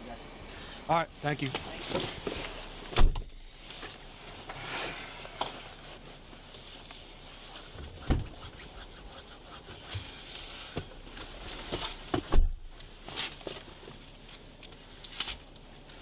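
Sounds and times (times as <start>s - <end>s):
heavy thump: 2.9s - 3.4s, 8.0s - 8.4s
clothing brushing microphone: 4.4s - 10.6s.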